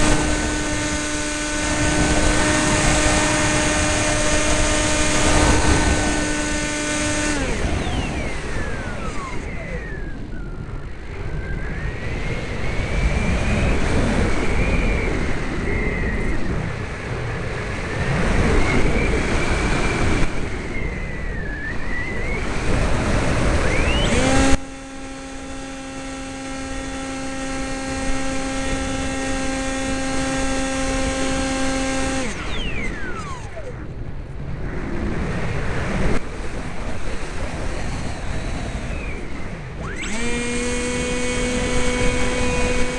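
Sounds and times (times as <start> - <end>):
electric motor whining: 0.0 - 10.7, 22.0 - 34.0, 37.5 - 42.9
wind rushing over microphone: 0.0 - 42.9.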